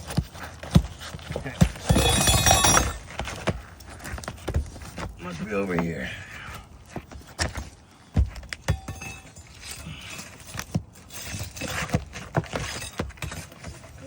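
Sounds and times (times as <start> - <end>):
metal tool knocking on shingles: 1.6 - 3.1, 8.6 - 9.4
tool scraping on shingles: 6.8 - 14.0.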